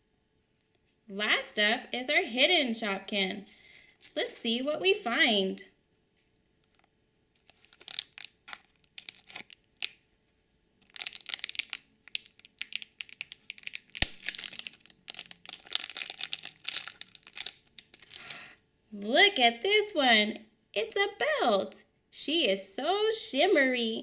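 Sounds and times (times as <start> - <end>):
packet snapping: 6.8 - 10.0, 10.8 - 18.4
plastic packet crinkling: 7.4 - 10.0, 10.8 - 18.5.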